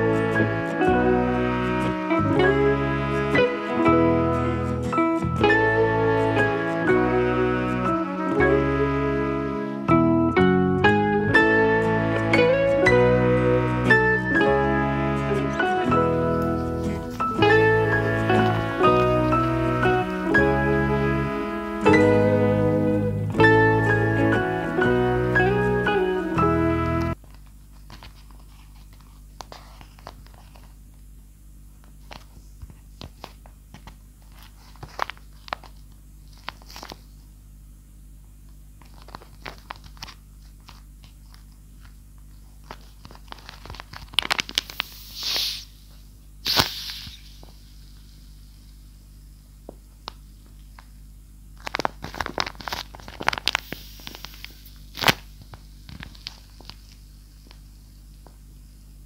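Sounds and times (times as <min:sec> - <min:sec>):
paper crackling and crinkling: 0:27.1 - 0:31.0, 0:31.8 - 0:37.3, 0:38.8 - 0:45.1, 0:51.6 - 0:58.4.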